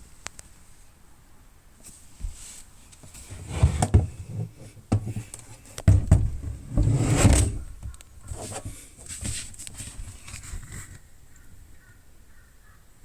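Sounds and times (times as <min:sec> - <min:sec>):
plastic case rubbing: 0:03.0 - 0:10.9
plastic tool case clicks and knocks: 0:05.8 - 0:06.7.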